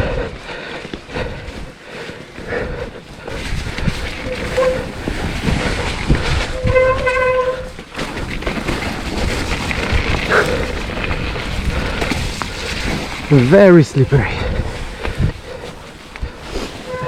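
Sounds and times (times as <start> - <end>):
bike tyres rumbling on rough ground: 0.0 - 17.0
wind on microphone: 2.6 - 13.3, 14.2 - 17.0
horn-like tone: 6.6 - 7.7.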